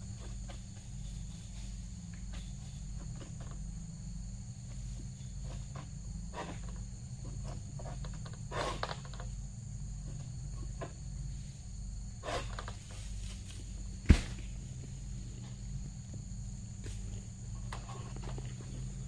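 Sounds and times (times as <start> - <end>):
high insect drone: 0.0 - 19.0
rustles and clicks: 12.3 - 19.0
sharp knock: 14.1 - 14.5.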